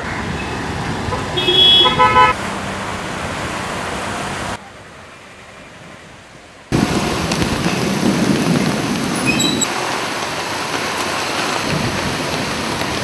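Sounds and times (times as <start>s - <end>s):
heavy rain pouring: 5.8s - 13.0s.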